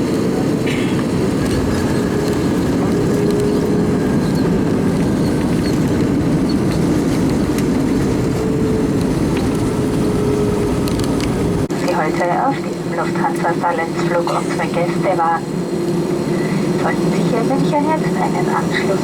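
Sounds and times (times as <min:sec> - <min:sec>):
landing gear rumbling: 0:00.0 - 0:11.7
aircraft engines humming: 0:00.0 - 0:19.0.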